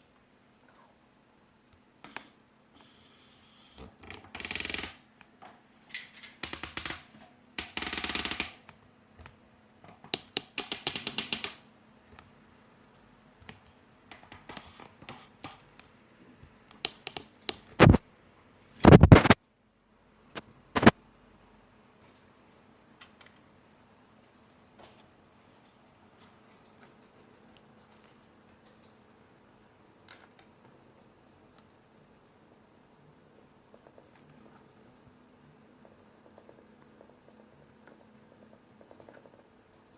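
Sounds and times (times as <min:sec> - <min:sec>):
keyboard clicks and rattles: 0:05.9 - 0:15.6, 0:16.7 - 0:18.0, 0:20.3 - 0:21.0, 0:35.8 - 0:39.9.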